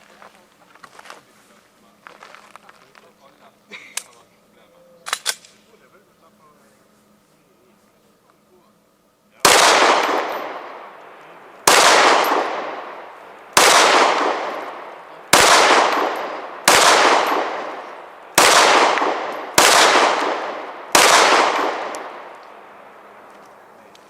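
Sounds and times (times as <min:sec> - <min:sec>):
pistol shots echoing: 0:09.4 - 0:23.3.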